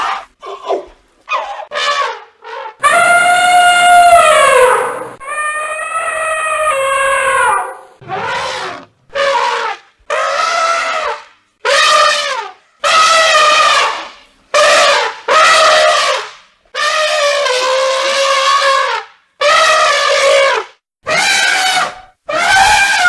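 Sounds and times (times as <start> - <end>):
elephant trumpeting: 0.0 - 16.2, 16.8 - 23.0.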